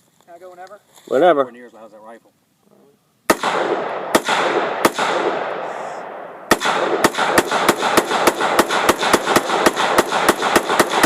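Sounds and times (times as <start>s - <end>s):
rifle shots with echo: 3.3s - 11.0s.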